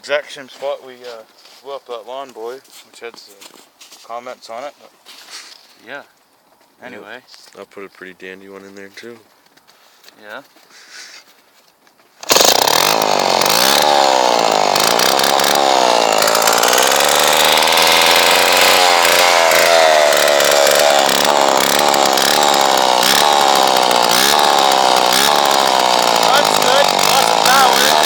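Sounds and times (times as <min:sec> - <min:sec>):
chainsaw engine revving: 0:12.2 - 0:28.0.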